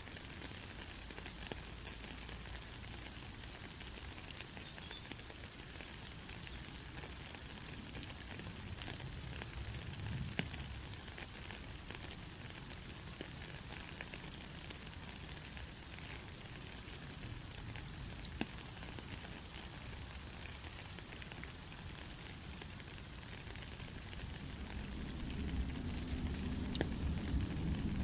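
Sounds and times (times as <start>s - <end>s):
white noise hiss: 0.0s - 28.0s
low rumble: 24.4s - 28.0s.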